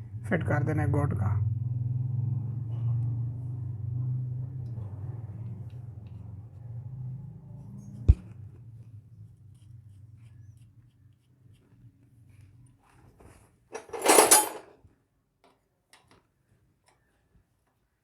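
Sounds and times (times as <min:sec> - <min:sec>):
loud metal rattling scrape: 0:13.8 - 0:14.7
metal tools clicking: 0:13.8 - 0:14.7.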